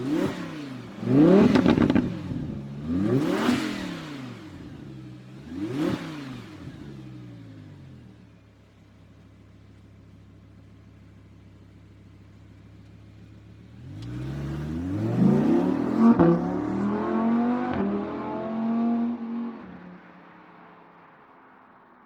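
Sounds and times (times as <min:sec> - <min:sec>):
car engine accelerating: 0:00.0 - 0:08.1, 0:13.2 - 0:21.2.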